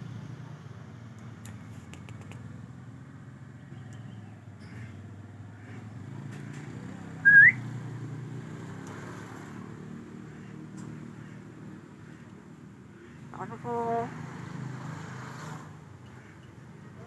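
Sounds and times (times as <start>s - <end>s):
bird whistle rising in pitch: 7.2s - 7.6s.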